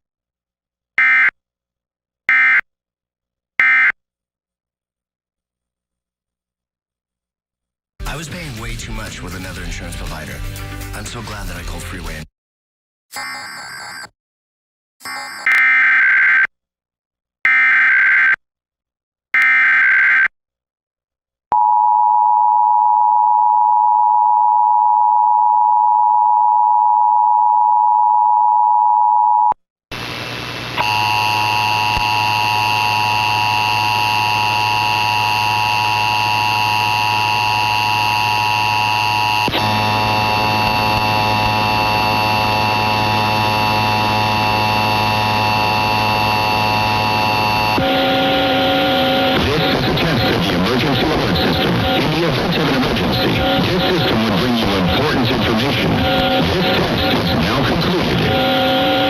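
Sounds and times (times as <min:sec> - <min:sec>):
shrill data bursts: 0:30.8 - 0:59.0.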